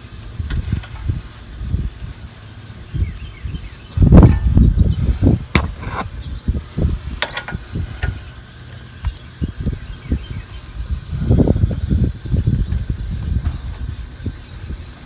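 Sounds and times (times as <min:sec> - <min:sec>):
low thuds and bumps: 0:05.4 - 0:06.1.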